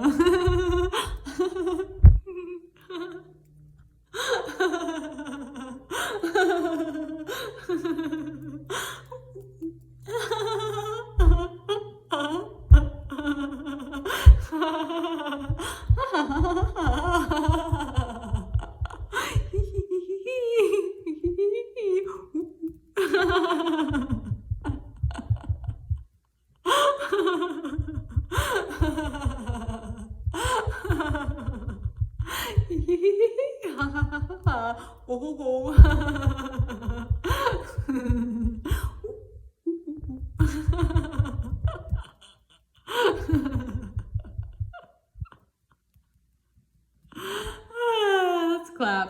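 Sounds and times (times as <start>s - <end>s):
woman laughing heartily: 0.0s - 3.3s, 4.2s - 45.5s
dull rapid low thudding: 0.2s - 1.2s, 1.8s - 2.3s, 11.2s - 11.5s, 12.7s - 13.3s, 14.2s - 14.6s, 15.4s - 19.9s, 23.2s - 26.1s, 27.7s - 33.0s, 33.8s - 34.6s, 35.7s - 39.3s, 40.0s - 42.1s, 43.2s - 45.4s.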